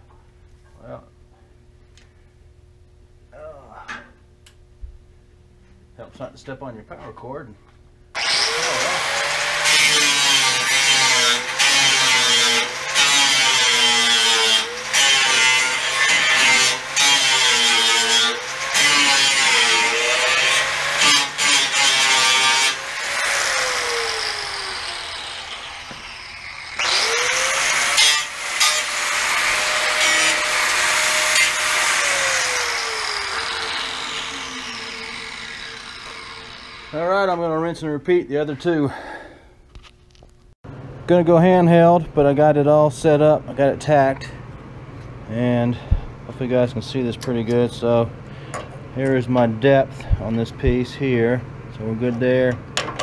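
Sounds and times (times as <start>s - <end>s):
angle grinder grinding steel: 8.2s - 37.3s.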